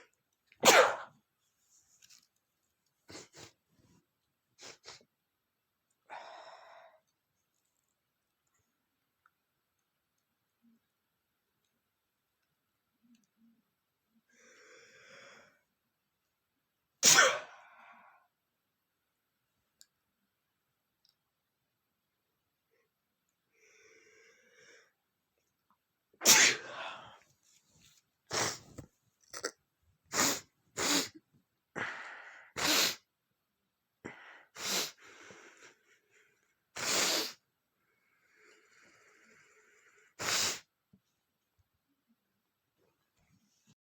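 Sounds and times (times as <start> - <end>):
person sneezing: 0.6 - 1.1, 17.0 - 17.7, 26.2 - 27.2, 28.3 - 28.8, 30.1 - 31.2, 32.6 - 33.0, 40.2 - 40.7
breathing and sniffling: 4.6 - 5.1, 34.1 - 37.4.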